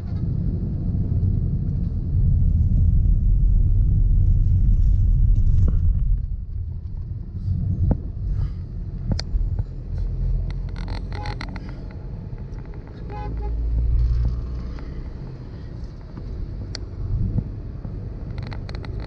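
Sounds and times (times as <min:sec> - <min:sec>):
vehicle engine and road rumble: 0:00.0 - 0:19.0
vehicle horn honking: 0:13.1 - 0:13.7.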